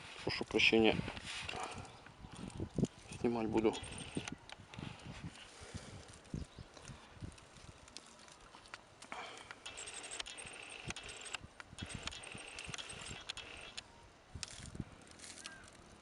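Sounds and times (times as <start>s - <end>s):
rustling in leaf litter: 14.5s - 16.0s.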